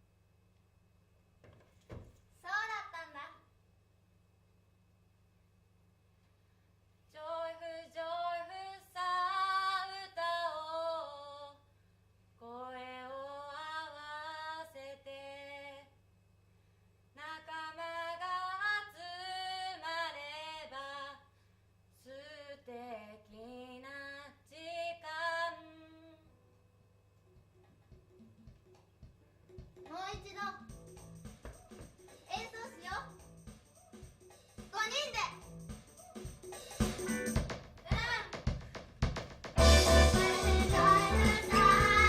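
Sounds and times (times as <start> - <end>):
woman singing unaccompanied: 7.1 - 11.6, 12.4 - 15.9, 17.2 - 21.2, 22.0 - 26.3.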